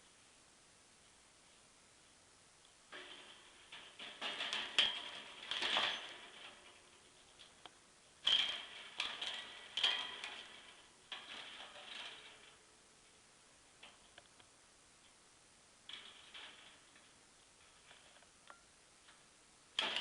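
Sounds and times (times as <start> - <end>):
budgie rattling cage bars: 2.9 - 12.7, 19.7 - 20.0.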